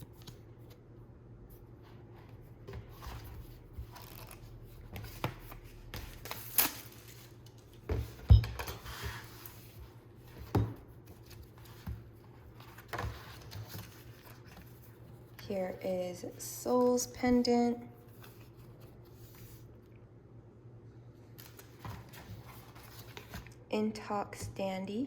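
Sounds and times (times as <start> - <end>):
album handling clicks and rustles: 2.7 - 9.7, 10.3 - 15.5, 21.4 - 23.6.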